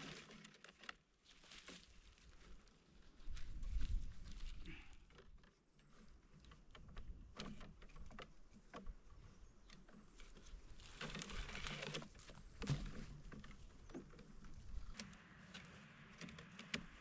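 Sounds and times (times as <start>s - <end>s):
leaves rustling: 0.0s - 5.0s, 10.2s - 17.0s
light knocks and clicks of sticks: 3.3s - 17.0s.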